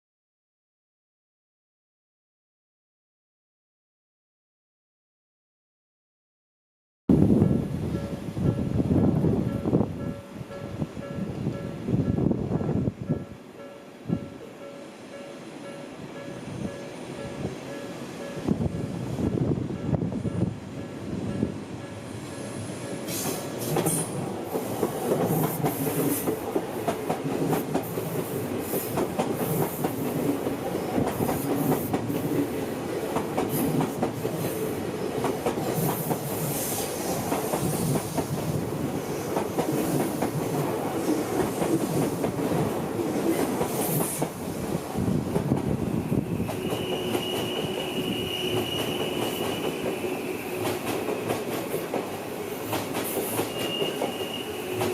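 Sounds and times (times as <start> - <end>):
train wheel squeal: 22.2 - 24.6, 45.8 - 51.7, 52.8 - 54.9
train wheels clicking over rail joints: 22.4 - 32.5, 48.5 - 54.9.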